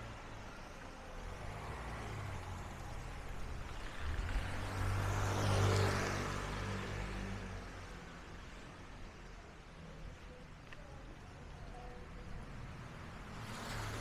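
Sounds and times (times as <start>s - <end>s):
car driving past on wet street: 1.2s - 8.1s, 12.7s - 14.0s.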